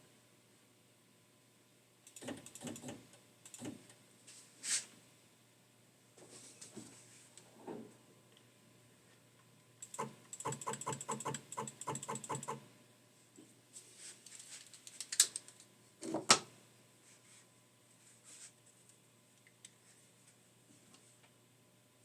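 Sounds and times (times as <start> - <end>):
rapid keyboard or mouse clicking: 2.1 - 3.8, 9.8 - 12.6.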